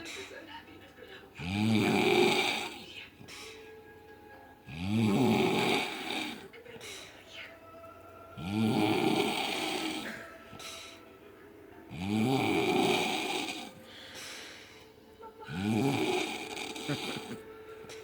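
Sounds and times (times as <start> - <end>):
man snoring: 1.4 - 2.9, 4.7 - 6.5, 8.4 - 11.0, 11.9 - 13.8, 15.5 - 17.4.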